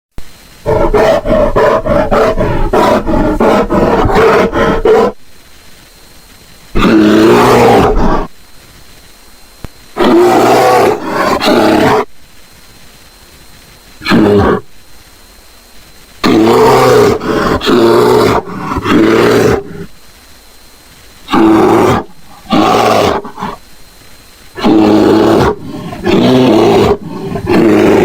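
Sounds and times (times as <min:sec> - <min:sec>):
cartoon gorilla roars: 0:00.6 - 0:05.2, 0:06.8 - 0:08.3, 0:10.0 - 0:12.1, 0:14.0 - 0:14.7, 0:16.2 - 0:19.9, 0:21.3 - 0:23.6, 0:24.6 - 0:28.0.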